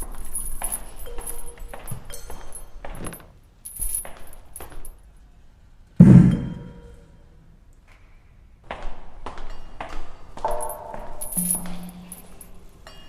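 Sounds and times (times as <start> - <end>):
small metallic clinks and jingles: 0.0 - 5.0, 10.4 - 13.0
heavy booming thud: 6.0 - 6.9.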